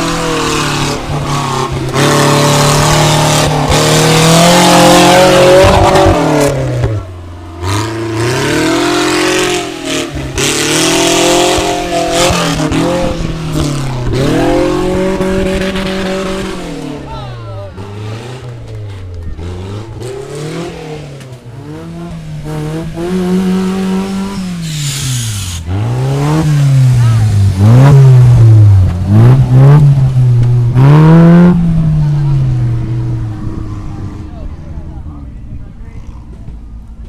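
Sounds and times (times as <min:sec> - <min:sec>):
engine revving hard: 0:00.0 - 0:17.2, 0:17.8 - 0:34.2.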